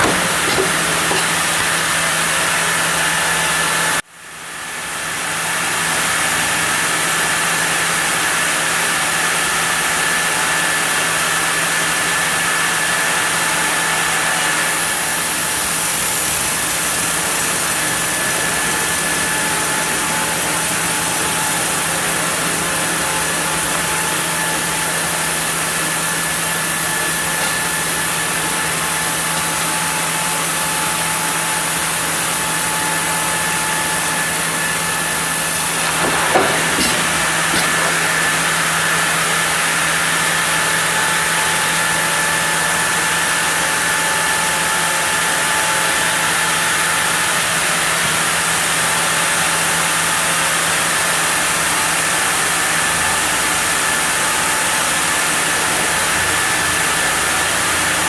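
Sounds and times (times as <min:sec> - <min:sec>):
short knock: 0:00.0 - 0:01.8, 0:35.9 - 0:38.4
sawmill saw cutting wood: 0:00.0 - 0:02.2, 0:15.7 - 0:40.8.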